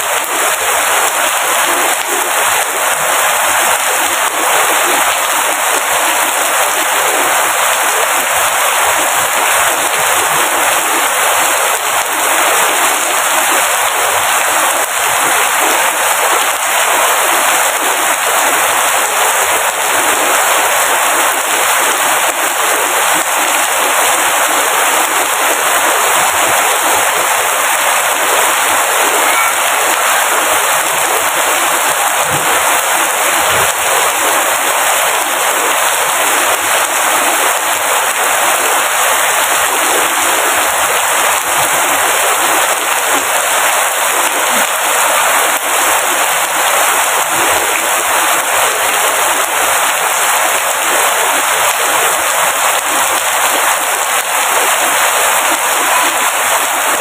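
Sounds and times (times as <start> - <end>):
heavy rain: 0.0 - 57.0.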